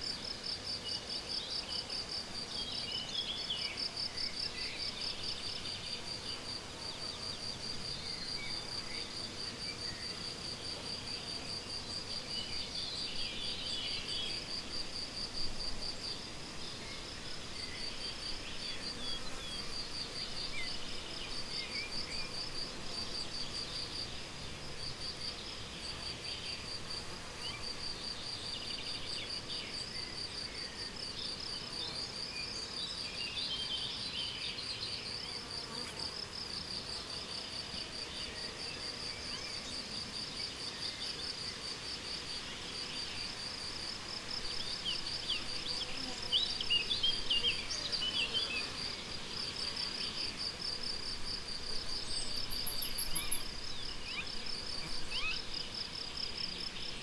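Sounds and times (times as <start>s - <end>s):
crickets chirping: 35.5s - 57.0s.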